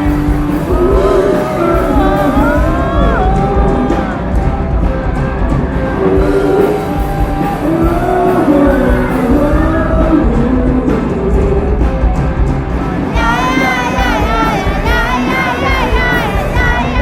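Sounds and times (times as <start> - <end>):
person singing: 0.0 - 4.4, 6.0 - 12.1, 13.1 - 17.0
heavy bass: 0.0 - 17.0
rock band playing live: 0.0 - 17.0
wavering high vocal: 0.6 - 4.3, 6.0 - 11.8, 13.1 - 17.0.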